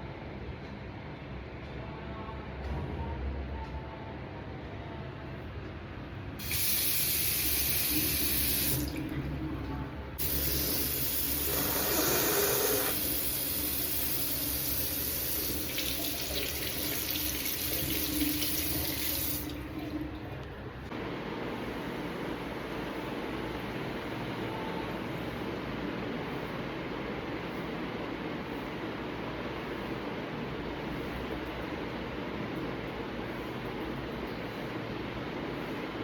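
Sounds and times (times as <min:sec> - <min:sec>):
tap water running into sink: 0:06.4 - 0:09.1, 0:10.2 - 0:20.4.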